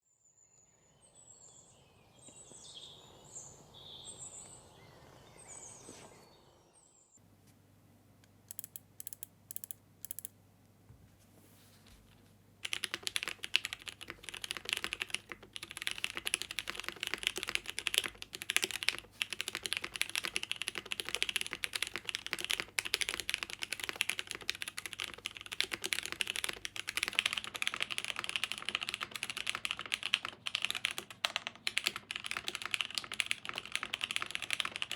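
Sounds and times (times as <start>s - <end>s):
fast mechanical keyboard typing: 8.5s - 10.3s, 12.6s - 34.9s.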